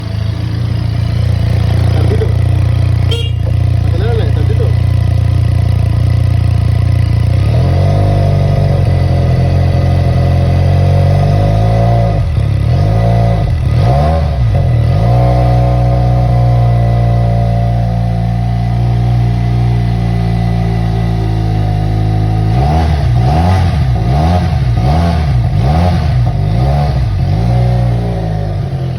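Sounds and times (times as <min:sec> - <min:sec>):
motorcycle throttle blips: 0:00.0 - 0:07.4
motorcycle engine idling: 0:00.0 - 0:07.7, 0:15.8 - 0:28.9.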